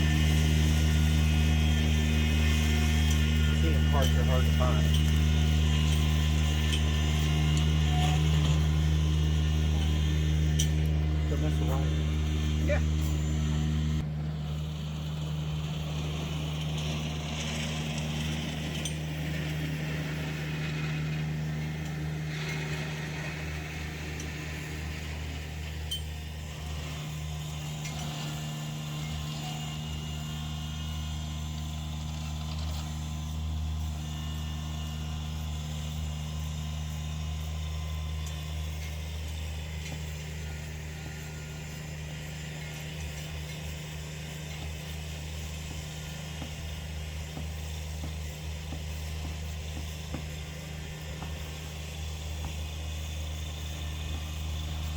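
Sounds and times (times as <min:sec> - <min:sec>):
engine running steadily: 0:00.0 - 0:54.9
faint clinks: 0:01.1 - 0:13.8.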